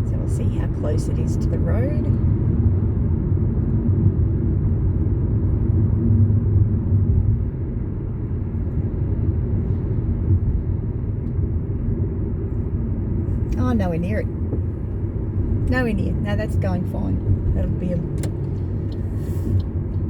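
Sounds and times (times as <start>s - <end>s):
car engine and tyre rumble: 0.0s - 20.0s.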